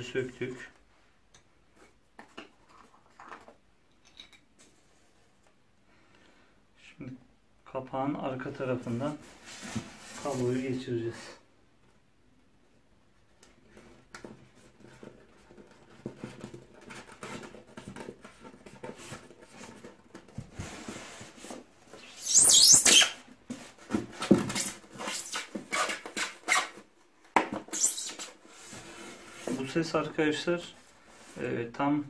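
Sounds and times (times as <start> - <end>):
foam squeaking against cable: 22.0 - 23.2, 27.7 - 28.3.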